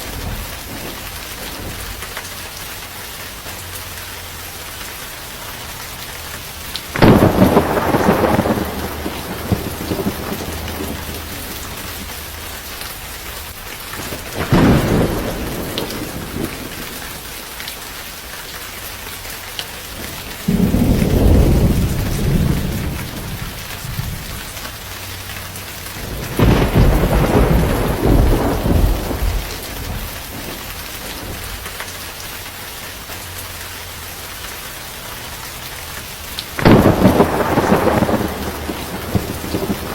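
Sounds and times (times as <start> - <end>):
thunderclaps: 0.0 - 2.6, 6.6 - 17.3, 20.0 - 25.0, 25.6 - 32.0, 36.4 - 39.9
steady rain falling: 0.0 - 39.9.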